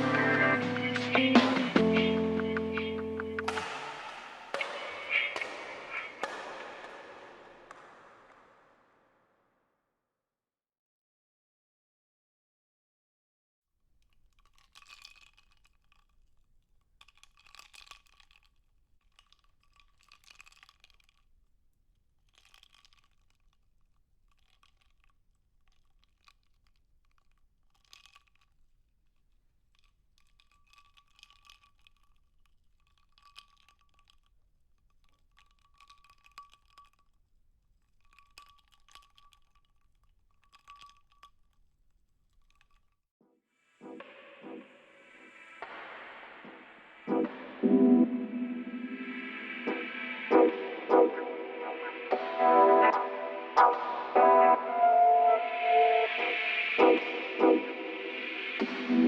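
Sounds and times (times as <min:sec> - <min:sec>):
rapid clicking and crackling: 0:13.8 - 0:43.1.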